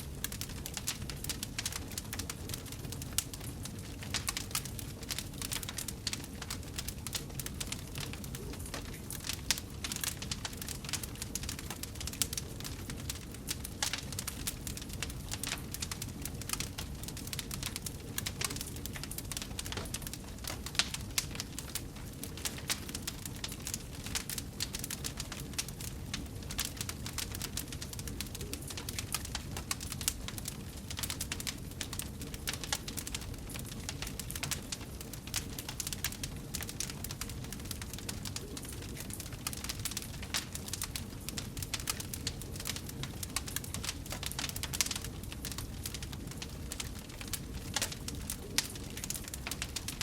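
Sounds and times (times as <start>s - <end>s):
low rumble of flames: 0.0s - 50.0s
wood fire crackling: 0.0s - 50.0s.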